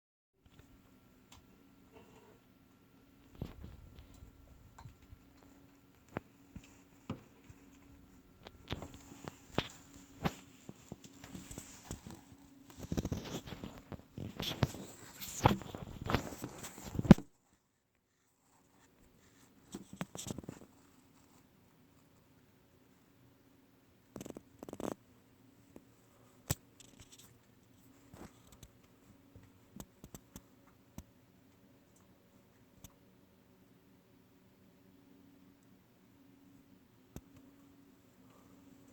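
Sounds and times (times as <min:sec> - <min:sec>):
faint steady hum: 0:00.4 - 0:38.9.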